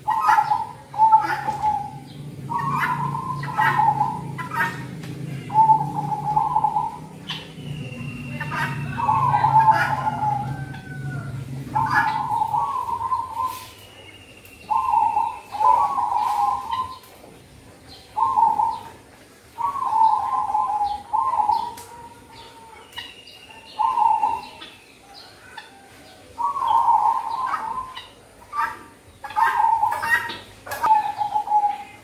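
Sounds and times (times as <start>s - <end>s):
dove cooing: 0.0s - 13.7s, 14.7s - 17.1s, 18.2s - 23.0s, 23.7s - 32.0s
faint high bird chirps: 7.3s - 11.0s, 11.8s - 17.1s, 19.6s - 25.2s.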